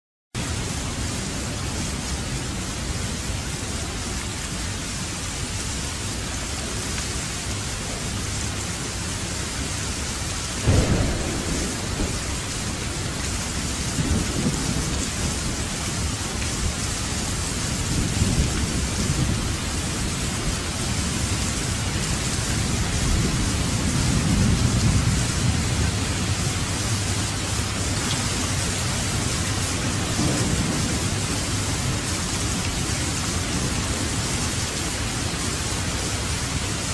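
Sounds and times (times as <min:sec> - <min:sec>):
steady rain falling: 0:00.4 - 0:36.9
low rolling thunder rumbles: 0:10.2 - 0:36.7
sharp thunderclap: 0:10.6 - 0:15.7, 0:29.8 - 0:32.7.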